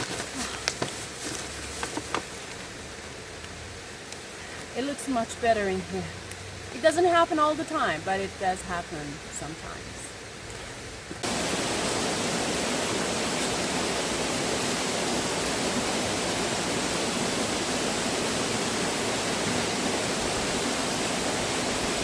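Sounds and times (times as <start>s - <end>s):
river water rushing: 11.2s - 22.0s.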